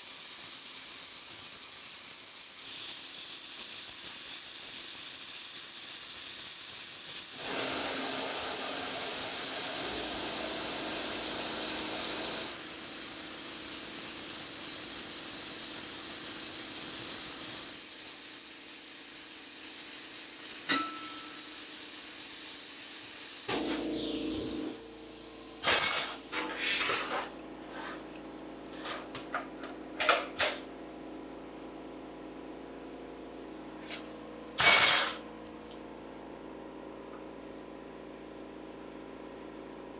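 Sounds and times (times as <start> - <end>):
plasma cutter hissing: 0.0 - 28.1.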